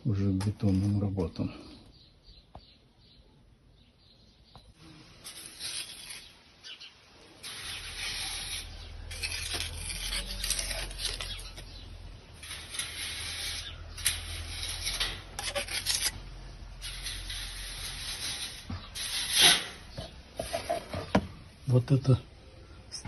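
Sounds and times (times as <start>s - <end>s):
trowel scraping mortar: 4.8s - 21.2s.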